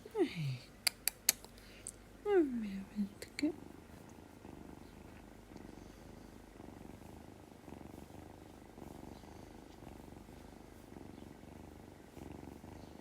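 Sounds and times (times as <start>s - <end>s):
kitten purring: 0.0s - 13.0s.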